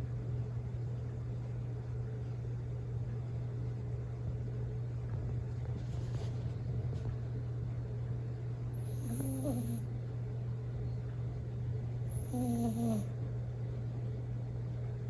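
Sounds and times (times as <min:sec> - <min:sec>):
steady low hum: 0:00.0 - 0:15.0
dog snoring: 0:08.8 - 0:09.8, 0:12.1 - 0:13.1.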